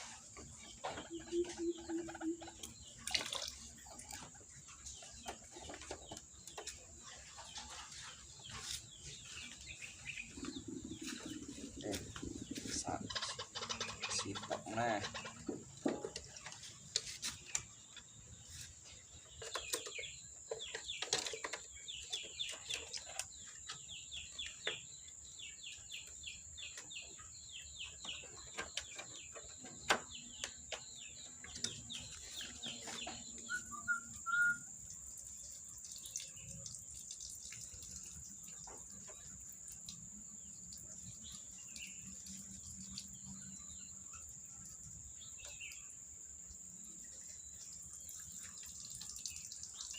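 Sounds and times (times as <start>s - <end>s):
waterhen calling: 0.4s - 6.1s, 7.4s - 16.8s, 32.4s - 34.9s.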